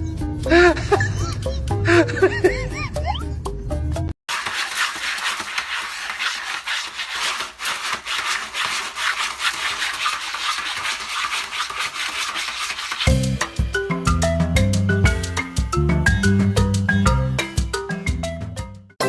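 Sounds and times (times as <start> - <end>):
music: 0.0 - 4.1, 13.1 - 19.0
scratching on rough surface: 4.3 - 18.1.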